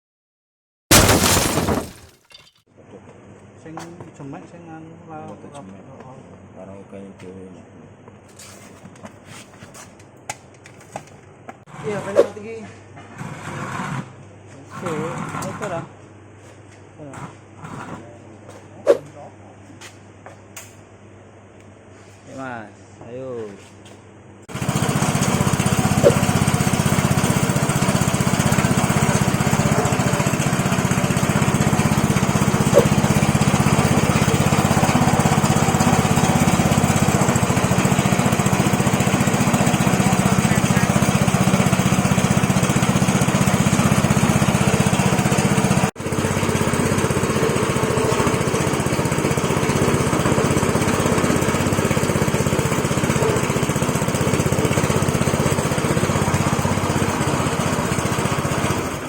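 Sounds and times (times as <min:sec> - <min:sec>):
cutting machine motor hum: 0:24.5 - 0:59.0.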